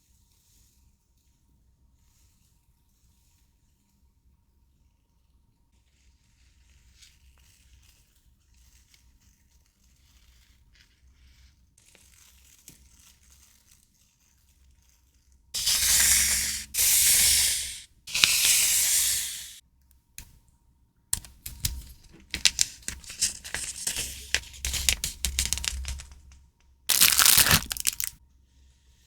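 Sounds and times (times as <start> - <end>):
paper tearing: 15.6 - 19.6, 21.2 - 26.3, 26.9 - 28.2
stationery rustling: 15.6 - 19.6, 21.2 - 28.2.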